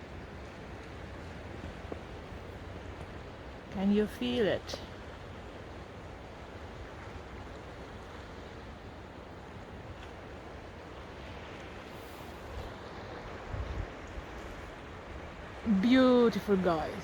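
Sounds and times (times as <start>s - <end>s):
wind buffeting microphone: 11.2s - 17.0s.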